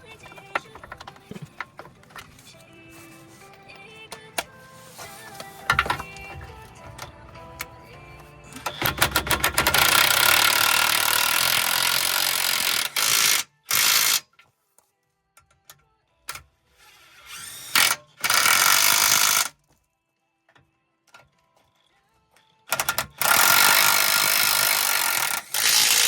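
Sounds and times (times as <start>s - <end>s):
impact wrench hammering: 8.6s - 14.2s, 22.7s - 26.0s.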